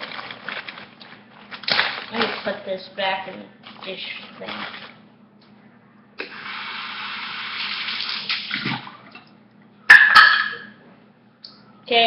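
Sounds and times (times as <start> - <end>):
water running from a tap: 6.3 - 8.5.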